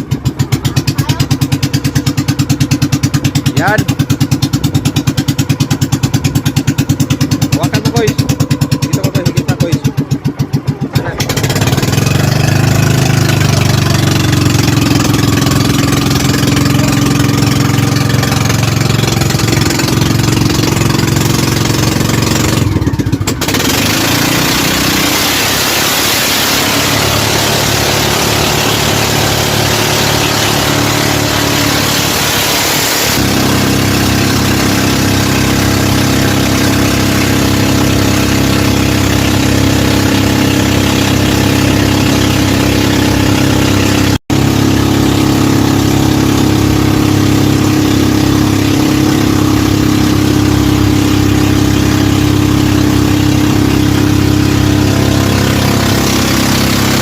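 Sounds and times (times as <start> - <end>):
boat engine running: 0.0 - 57.0.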